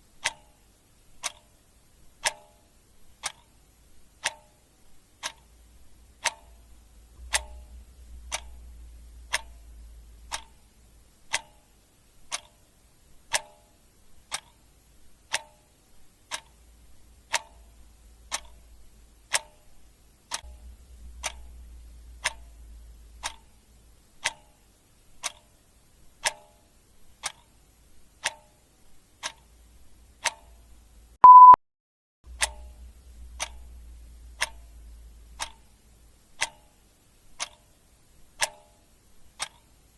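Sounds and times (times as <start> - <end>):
clock ticking: 0.0 - 31.6, 32.3 - 39.9
short high electronic beep: 31.2 - 31.6.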